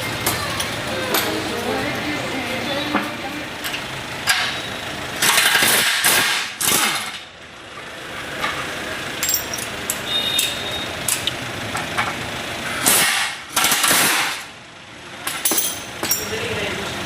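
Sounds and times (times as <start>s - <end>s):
loud metallic tool bursts: 4.3s - 7.2s, 12.8s - 14.5s.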